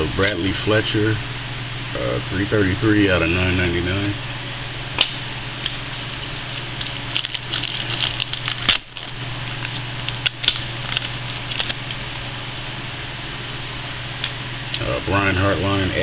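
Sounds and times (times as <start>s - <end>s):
steady low hum: 0.0s - 16.0s
trading cards rustling and clicking: 5.6s - 12.3s.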